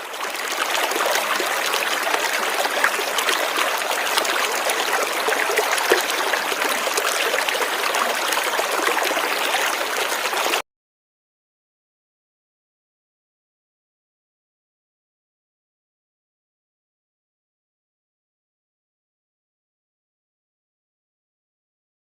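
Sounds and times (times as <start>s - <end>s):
river water rushing: 0.0s - 10.6s.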